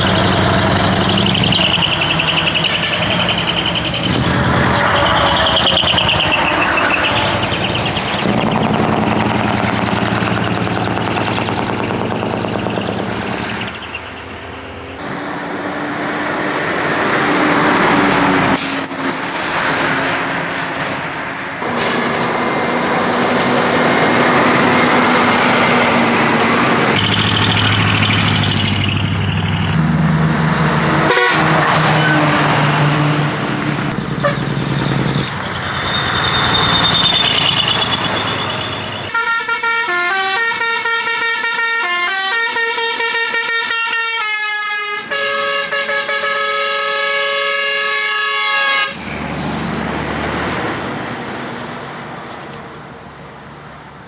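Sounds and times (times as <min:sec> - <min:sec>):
diesel engines running: 0:00.0 - 0:54.0
air brakes hissing: 0:15.0 - 0:15.8, 0:17.7 - 0:20.2
truck horn blasts: 0:30.9 - 0:32.5, 0:35.8 - 0:49.2.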